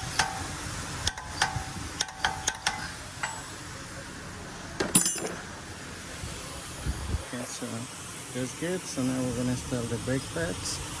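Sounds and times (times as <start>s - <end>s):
torque wrench ratcheting clicks: 0.0s - 3.4s
metal clattering on metal: 1.1s - 3.5s, 4.8s - 5.4s.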